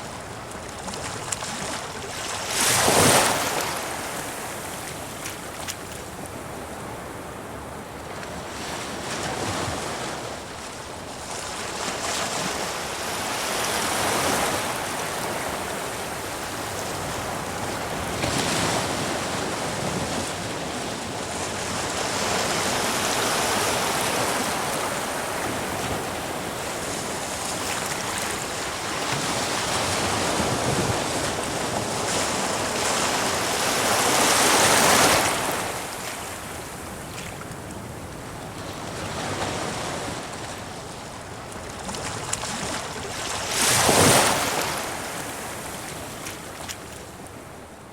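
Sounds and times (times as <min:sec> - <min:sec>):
sea waves breaking on rocks: 0:00.7 - 0:06.6, 0:11.5 - 0:38.2, 0:41.7 - 0:47.2.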